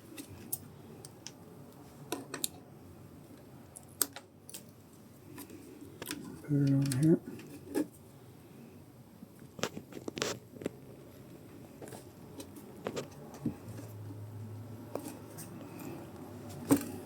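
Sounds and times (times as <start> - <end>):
clicks and rustles of plastic parts: 5.3 - 8.0.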